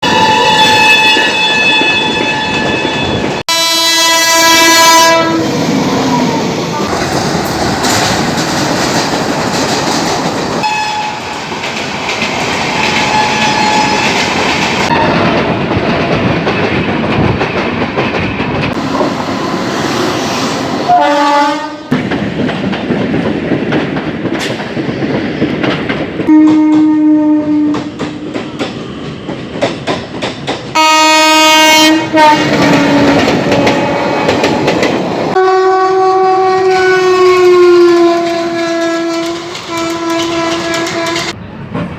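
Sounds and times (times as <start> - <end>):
locomotive horn blasts: 0.0 - 5.5, 10.6 - 11.3, 20.9 - 22.0, 26.3 - 27.9, 30.8 - 34.4, 35.4 - 41.4
train wheels rushing and clattering: 0.1 - 3.4, 5.3 - 21.2, 21.8 - 35.4, 37.4 - 41.9.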